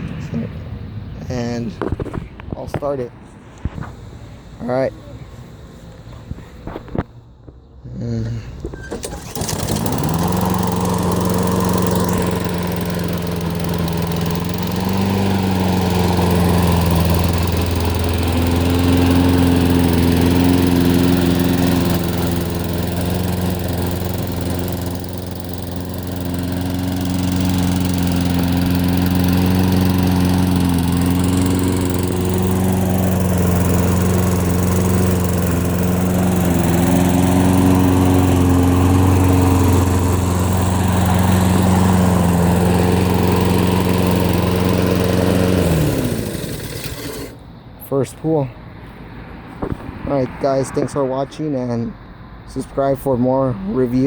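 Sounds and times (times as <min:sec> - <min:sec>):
lawn mower engine running: 0:08.7 - 0:47.5.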